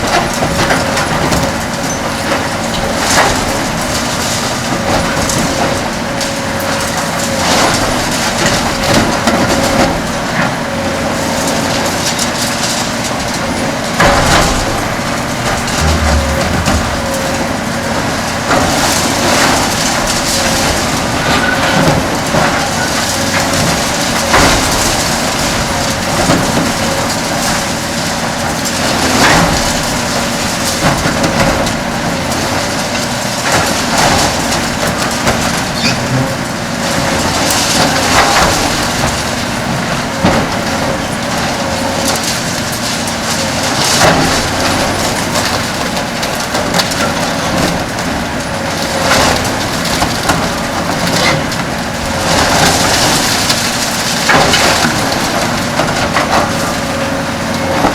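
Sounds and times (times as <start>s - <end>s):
excavator diesel and hydraulic whine: 0.0s - 57.9s
breaking concrete and falling rubble: 28.6s - 57.9s.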